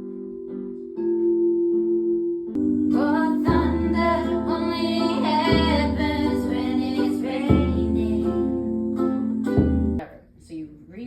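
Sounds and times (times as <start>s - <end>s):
held low tones: 0.0s - 10.0s
plucked guitar: 0.0s - 10.1s
woman singing: 2.6s - 9.7s
deep bass note: 2.6s - 10.0s.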